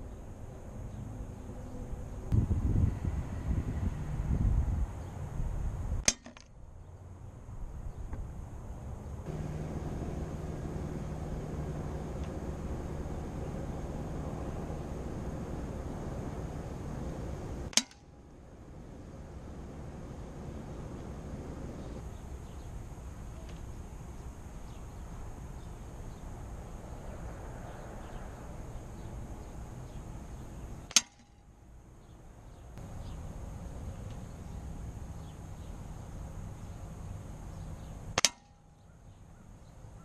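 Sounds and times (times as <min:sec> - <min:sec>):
outdoor background: 0:00.0 - 0:40.0
air gun shots: 0:17.7 - 0:18.1, 0:30.9 - 0:31.4.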